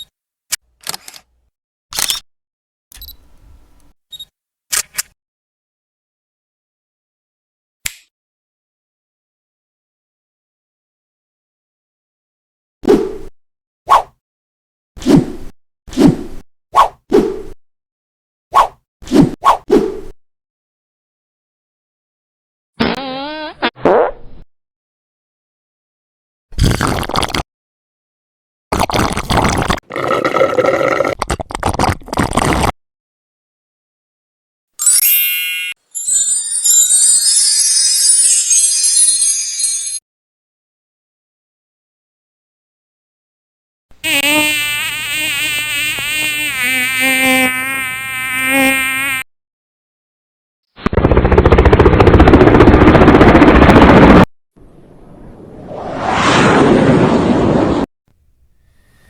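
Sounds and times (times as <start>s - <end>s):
insect buzzing: 44.0s - 49.2s
rising whoosh: 54.8s - 57.9s.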